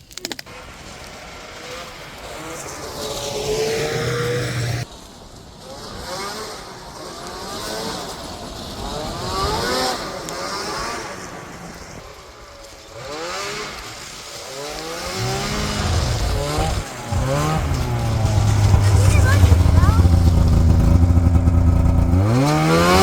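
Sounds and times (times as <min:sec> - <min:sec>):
snowmobile engines revving: 0:00.6 - 0:04.9, 0:05.8 - 0:23.0
low engine drone: 0:15.2 - 0:23.0.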